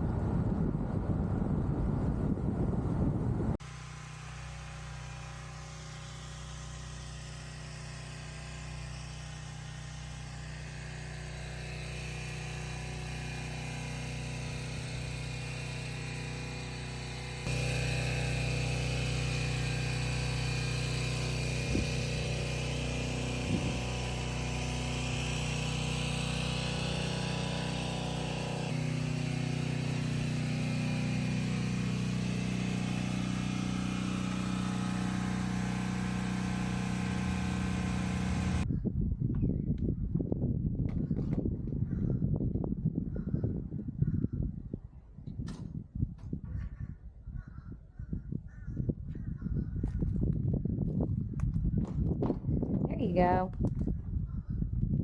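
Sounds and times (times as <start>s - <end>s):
motor humming: 3.6s - 38.7s.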